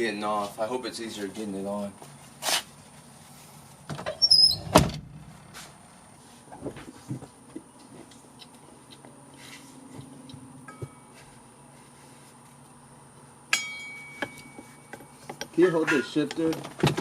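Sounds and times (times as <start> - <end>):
high squeak: 4.1 - 4.7.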